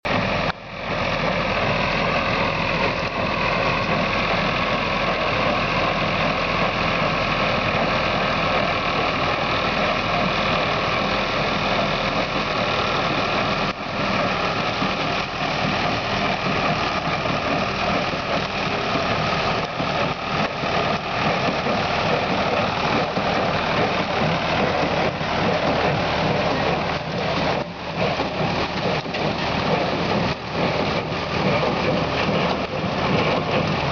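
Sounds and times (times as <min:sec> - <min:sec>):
baler machine running: 0:00.0 - 0:33.9
tractor engine running: 0:00.0 - 0:33.9.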